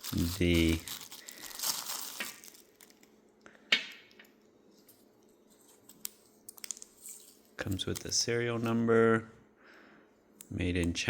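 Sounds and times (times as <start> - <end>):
packaging rustling: 0.0 - 3.1.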